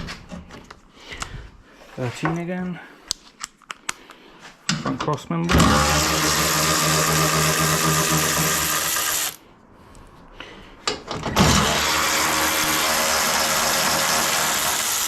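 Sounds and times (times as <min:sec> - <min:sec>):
cordless power tool running: 0:05.5 - 0:09.4, 0:11.4 - 0:15.0.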